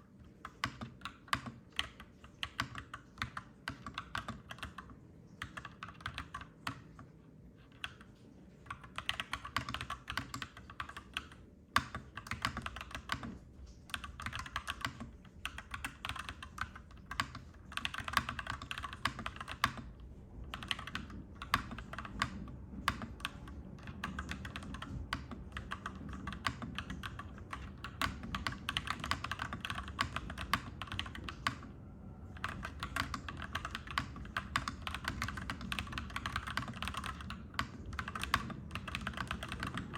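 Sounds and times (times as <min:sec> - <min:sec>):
mechanical keyboard typing: 0:00.2 - 0:39.9
low steady rumble: 0:12.0 - 0:39.9.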